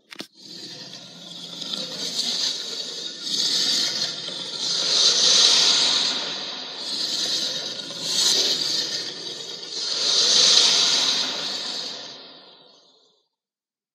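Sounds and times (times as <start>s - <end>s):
breathy hissing noise: 1.7s - 12.7s.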